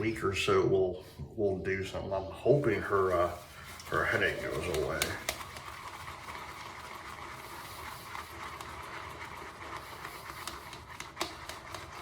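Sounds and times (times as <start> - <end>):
shaving brush wet swishing: 2.4 - 12.0.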